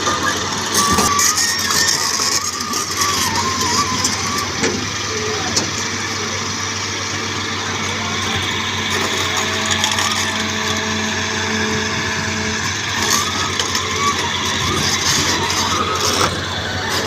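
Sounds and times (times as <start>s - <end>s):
wavering higher tone: 0.0s - 5.5s
diesel machinery engine hum: 0.0s - 17.0s.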